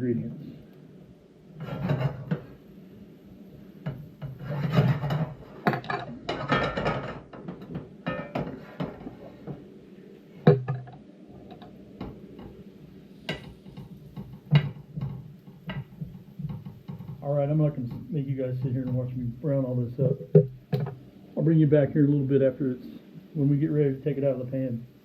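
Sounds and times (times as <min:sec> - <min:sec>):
utensil scraping in frying pan: 0:01.6 - 0:02.8, 0:03.6 - 0:09.6, 0:11.3 - 0:18.2
utensil knocking against pan: 0:13.3 - 0:17.2.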